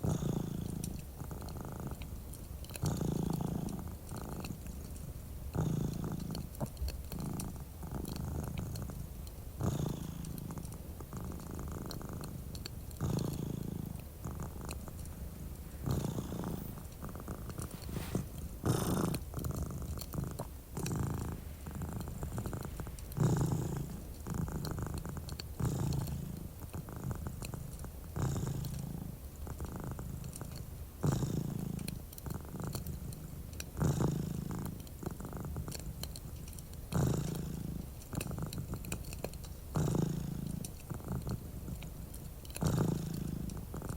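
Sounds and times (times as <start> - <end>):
cat purring: 0.0 - 43.9
fireplace crackling: 10.2 - 43.9.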